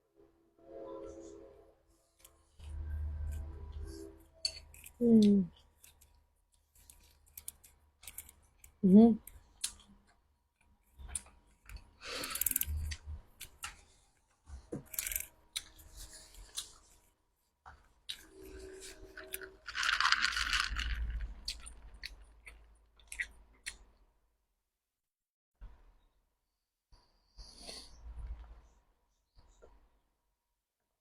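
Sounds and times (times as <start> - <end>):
person chewing crunchy food: 4.6 - 10.2, 17.9 - 23.9.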